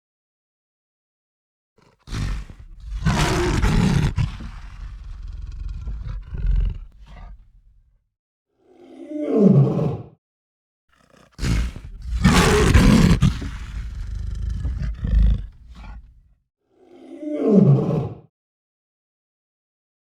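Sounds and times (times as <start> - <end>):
lion roaring: 1.8 - 7.7, 11.0 - 16.2.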